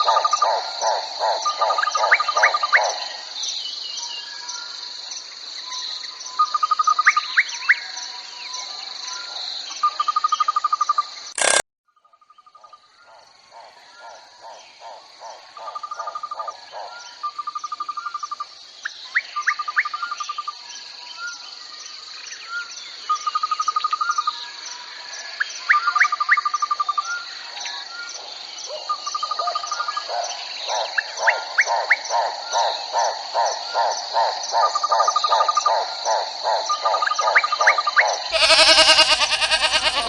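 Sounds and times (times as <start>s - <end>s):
crickets chirping: 0.0s - 40.0s
rapid pulsing animal call: 38.3s - 40.0s
short animal trills: 38.3s - 40.0s.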